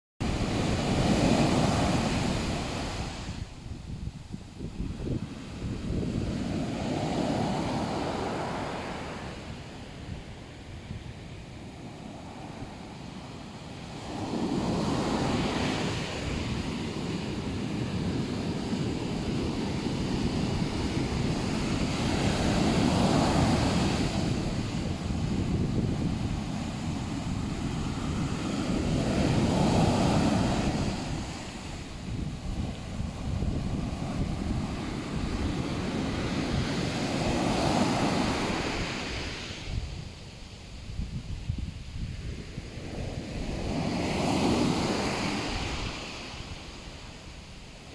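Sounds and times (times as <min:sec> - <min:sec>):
wind noise on microphone: 0:00.2 - 0:47.9
ocean waves breaking: 0:14.0 - 0:39.7.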